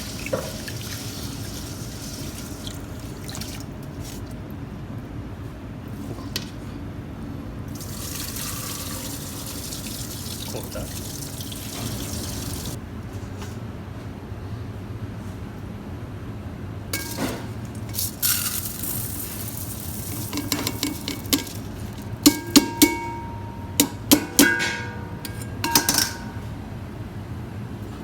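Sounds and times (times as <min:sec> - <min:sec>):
kitchenware clinking and knocking: 0:17.0 - 0:17.5, 0:20.1 - 0:26.5.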